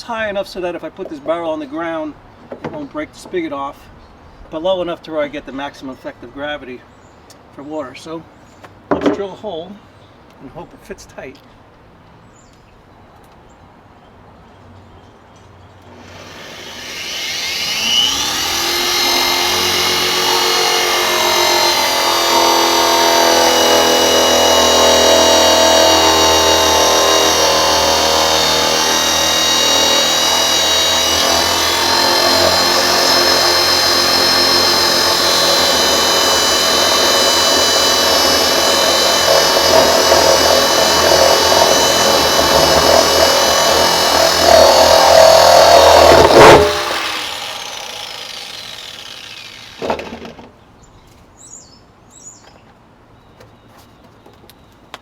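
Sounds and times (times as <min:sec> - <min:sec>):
power drill hole saw cutting plastic: 0:15.9 - 0:50.4.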